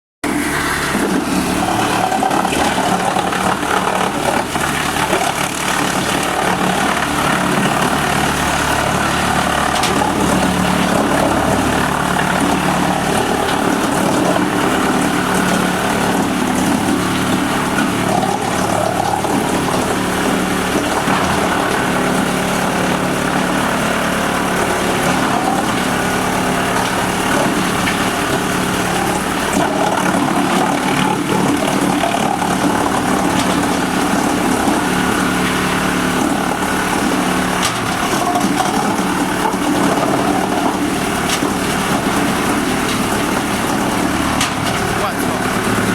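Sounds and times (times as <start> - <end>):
wood chipper engine running: 0.2 - 45.9.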